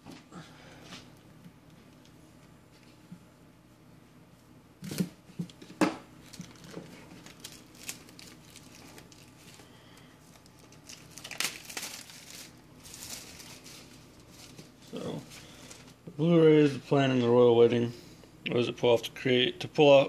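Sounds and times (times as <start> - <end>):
plastic wrap crinkling and tearing: 6.2 - 16.0.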